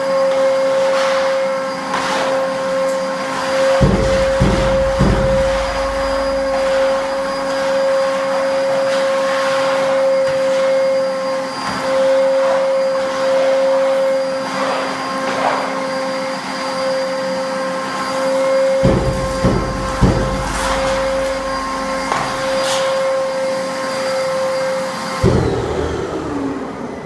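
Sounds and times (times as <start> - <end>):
vacuum cleaner motor whine: 0.0 - 27.0
air rushing through hose: 2.2 - 14.2.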